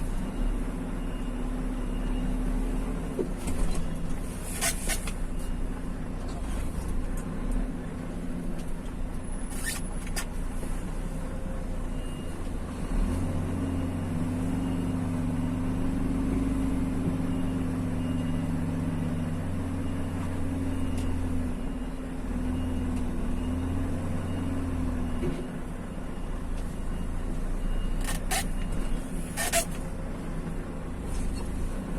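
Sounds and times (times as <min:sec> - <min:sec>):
road noise: 0:00.0 - 0:31.9
vehicle engine hum: 0:00.0 - 0:31.9
faint high beep: 0:00.1 - 0:02.9, 0:11.4 - 0:12.5, 0:16.4 - 0:29.3.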